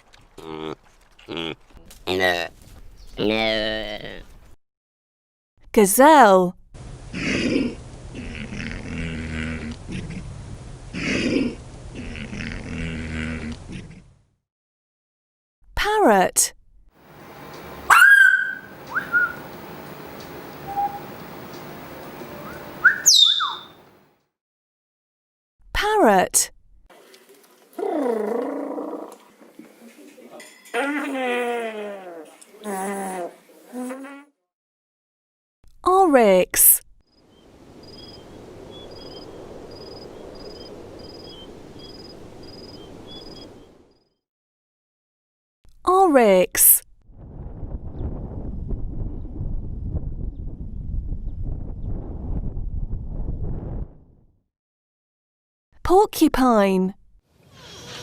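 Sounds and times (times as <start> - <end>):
parrot calling: 17.8 - 19.6, 20.6 - 21.2, 22.4 - 23.8
lower chirps: 17.9 - 19.5, 20.5 - 21.3, 22.3 - 23.9, 37.2 - 44.1
steady background hiss: 18.7 - 23.1, 37.3 - 43.9.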